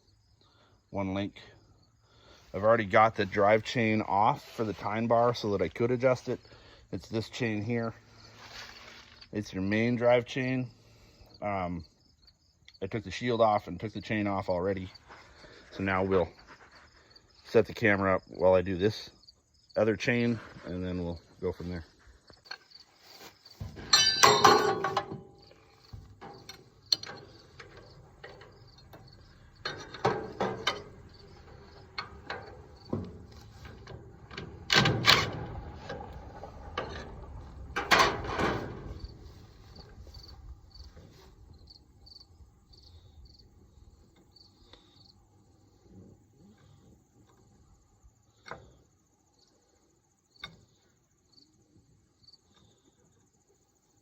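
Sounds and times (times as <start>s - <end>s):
crickets chirping: 0.0s - 54.0s
metal clanks and knocks: 23.5s - 41.2s.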